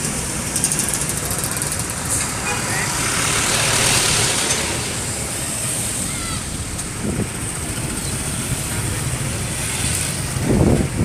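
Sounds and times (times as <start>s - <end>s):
road traffic: 0.0s - 11.0s
wind buffeting microphone: 6.5s - 11.0s.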